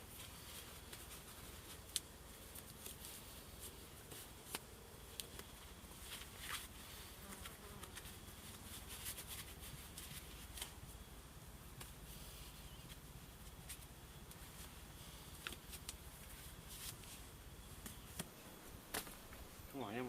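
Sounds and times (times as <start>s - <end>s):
rustling plants: 0.0s - 20.0s
steady soft hiss: 0.0s - 20.0s
small clicks and snaps: 1.8s - 3.0s.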